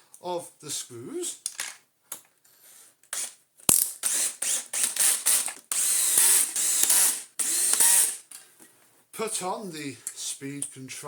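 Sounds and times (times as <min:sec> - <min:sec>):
screwdriver ratcheting: 0:03.1 - 0:08.3.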